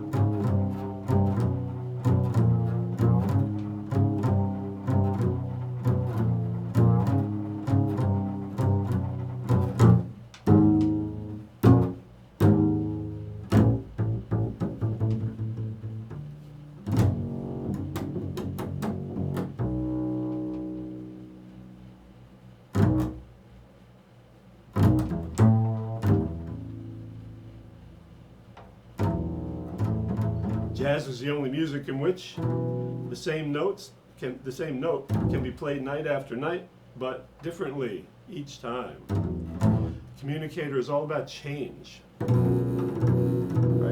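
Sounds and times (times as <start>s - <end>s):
double bass plucked: 0.0s - 31.2s, 32.4s - 33.4s, 35.0s - 35.8s, 38.9s - 40.4s, 42.2s - 43.9s.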